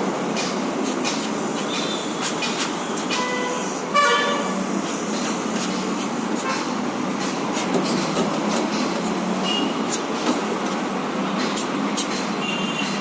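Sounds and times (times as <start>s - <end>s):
busy road traffic: 0.0s - 13.0s.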